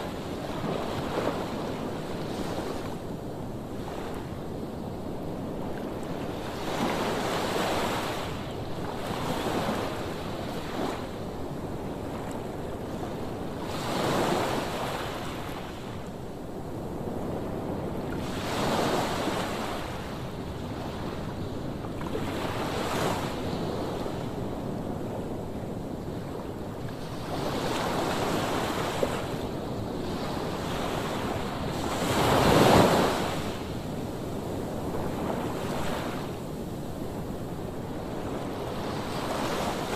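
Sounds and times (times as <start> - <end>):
wind: 0.0 - 39.9
sea waves breaking on shore: 26.2 - 39.9.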